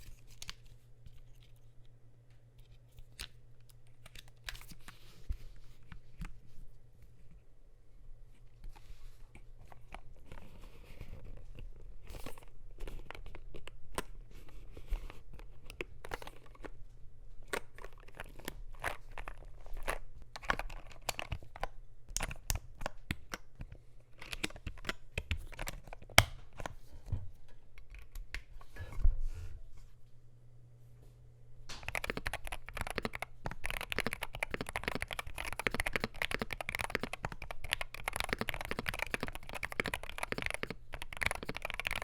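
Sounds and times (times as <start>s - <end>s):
mechanical keyboard typing: 31.7s - 42.0s.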